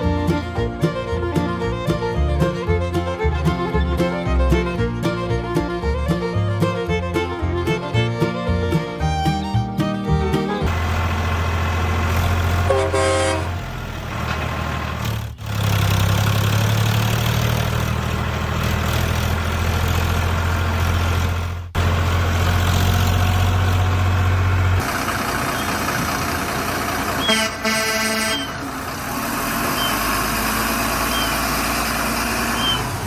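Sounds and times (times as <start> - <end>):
truck engine rumbling: 0.0 - 33.0
truck horn toot: 12.6 - 13.7, 27.2 - 28.9.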